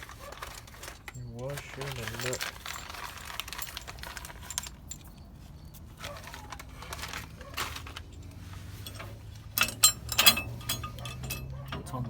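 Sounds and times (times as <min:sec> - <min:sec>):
sharp metal clanks: 0:08.8 - 0:12.0.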